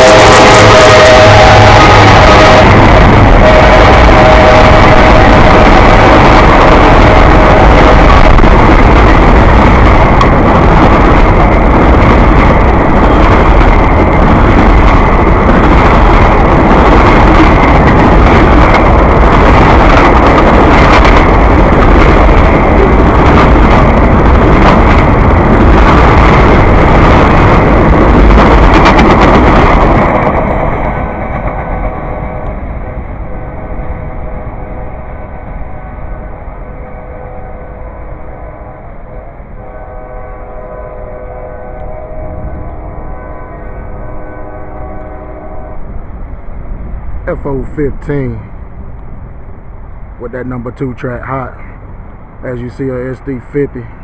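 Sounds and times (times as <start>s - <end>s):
train horn chord: 0.0s - 7.8s, 32.0s - 46.0s
freight train passing: 0.0s - 54.0s.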